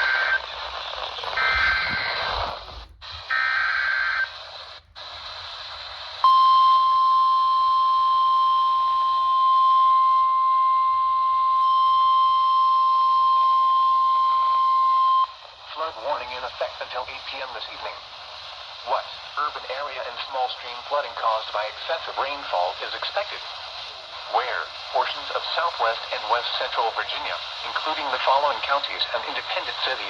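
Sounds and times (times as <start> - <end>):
radio static: 0.0 - 6.2, 15.4 - 30.0
steady alarm tone: 1.2 - 4.3.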